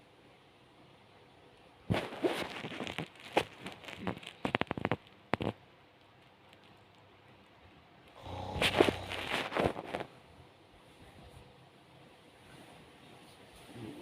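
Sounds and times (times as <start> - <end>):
crackling sputters from lips: 1.9 - 7.0, 8.1 - 10.2.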